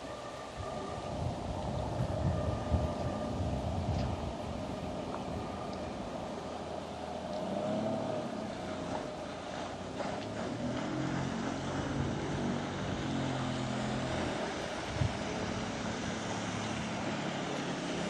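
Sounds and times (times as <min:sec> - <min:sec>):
wind noise: 0:00.0 - 0:06.4, 0:10.0 - 0:18.0
water noise: 0:00.0 - 0:18.0
boat motor running: 0:01.5 - 0:18.0.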